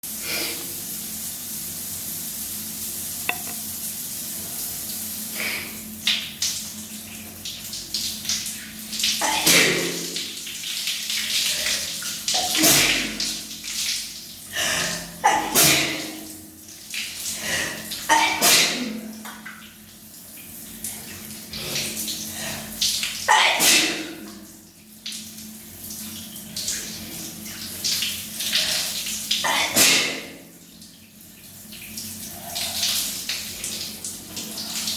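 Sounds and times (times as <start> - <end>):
shower water running: 0.0 - 34.9
person sneezing: 29.5 - 30.4.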